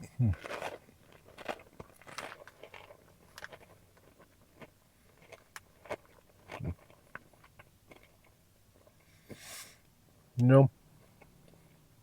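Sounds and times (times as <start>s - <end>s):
person chewing chips: 0.0s - 9.0s.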